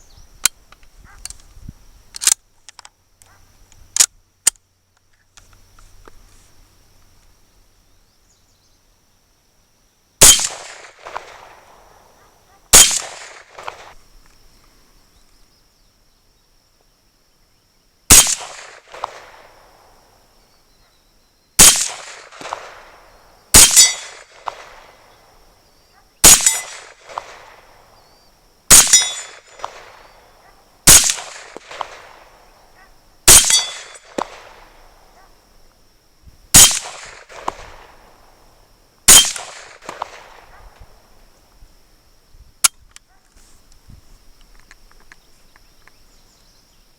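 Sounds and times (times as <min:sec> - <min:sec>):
rifle shots with echo: 0:10.2 - 0:14.0, 0:18.1 - 0:20.0, 0:21.6 - 0:25.5, 0:26.2 - 0:35.3, 0:36.6 - 0:38.5, 0:39.1 - 0:41.2.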